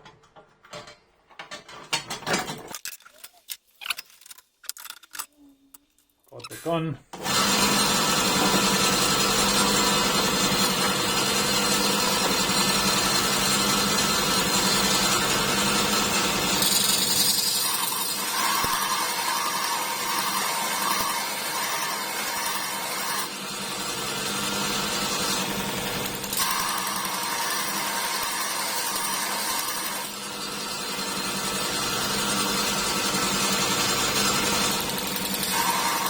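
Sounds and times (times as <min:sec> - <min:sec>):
belt sharpener grinding drill bit: 0:07.2 - 0:36.0.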